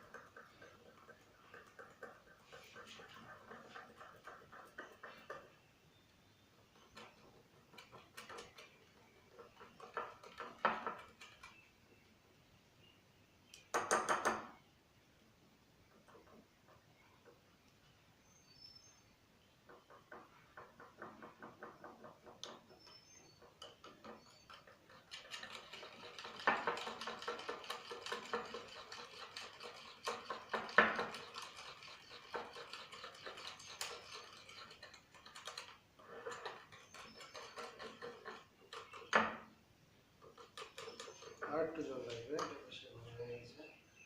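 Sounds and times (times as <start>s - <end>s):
spoon stirring batter in bowl: 0.0s - 5.6s, 22.4s - 39.5s, 40.2s - 42.7s.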